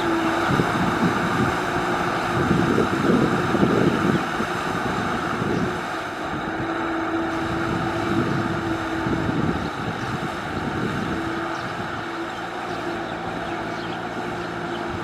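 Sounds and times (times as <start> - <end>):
tractor engine working hard: 0.0 - 15.0.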